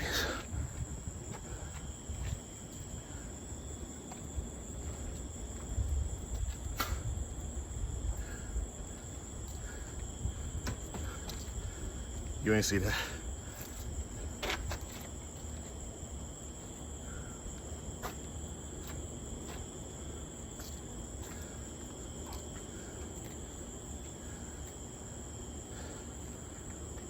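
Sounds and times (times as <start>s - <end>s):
insects chirring: 0.0s - 27.0s.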